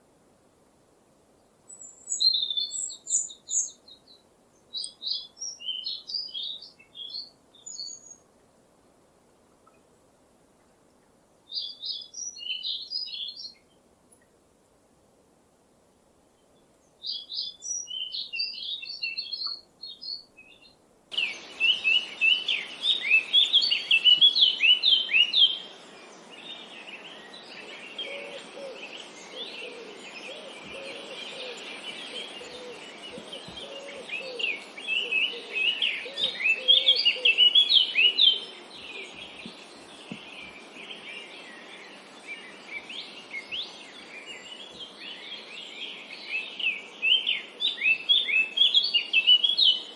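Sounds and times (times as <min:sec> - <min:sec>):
background hiss: 0:00.0 - 0:49.9
small birds chirping: 0:01.4 - 0:09.9, 0:10.6 - 0:14.4, 0:16.4 - 0:49.9
low bird calls: 0:27.8 - 0:41.4.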